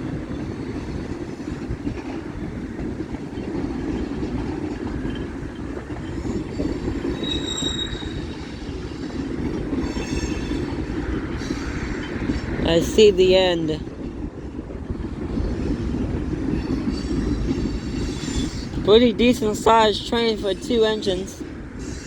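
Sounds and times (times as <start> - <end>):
steel wheels rumbling on rail: 0.0 - 22.0
high-pitched wheel squeals: 6.6 - 10.7.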